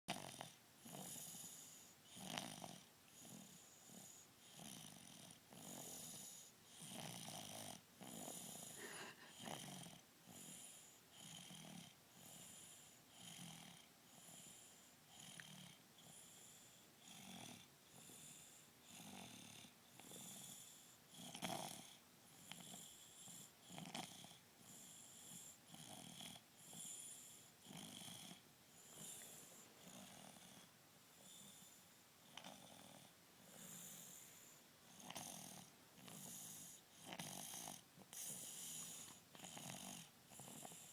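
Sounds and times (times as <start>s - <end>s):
baby snoring softly: 0.1s - 40.9s
baby snorting: 8.7s - 10.0s.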